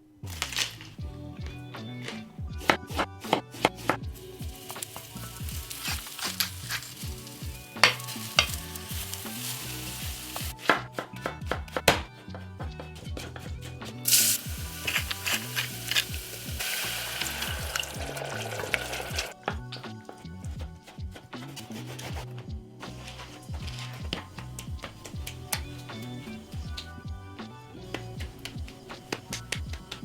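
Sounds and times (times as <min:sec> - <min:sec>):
food sizzling in a pan: 0:04.2 - 0:10.6, 0:14.1 - 0:19.3
utensil clicking in a pan: 0:04.6 - 0:10.5.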